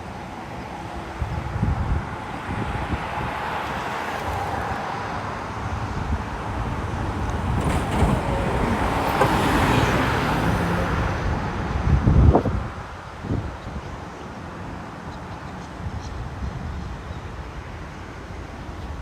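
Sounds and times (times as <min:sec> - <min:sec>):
wind buffeting microphone: 0:01.0 - 0:04.8, 0:05.5 - 0:14.0.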